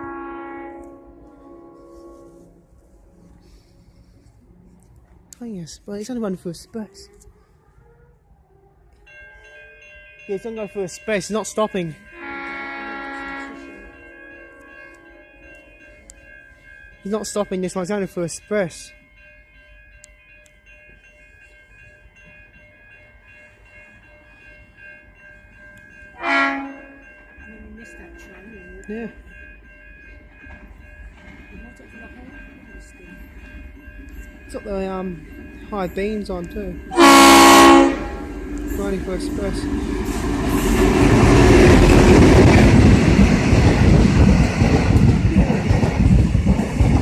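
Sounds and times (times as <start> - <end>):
locomotive horn blast: 0.0 - 2.6, 12.1 - 15.2, 26.2 - 27.0, 36.9 - 38.3
diesel locomotive engine passing: 23.2 - 47.0
train wheels on rails: 26.8 - 47.0.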